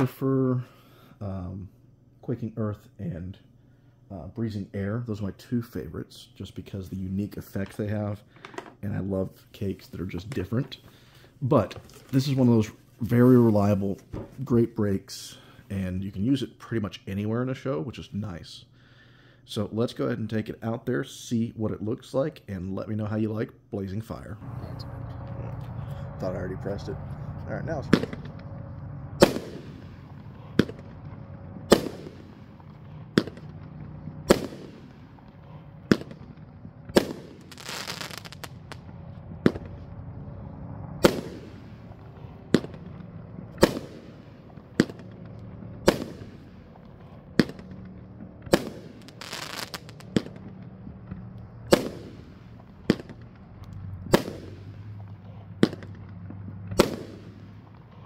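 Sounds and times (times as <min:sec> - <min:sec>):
firework bangs: 0:24.4 - 0:58.0
firework crackling hiss: 0:27.9 - 0:39.8, 0:41.0 - 0:45.1, 0:45.8 - 0:47.8, 0:48.5 - 0:50.6, 0:51.6 - 0:53.4, 0:54.1 - 0:55.9, 0:56.8 - 0:57.9.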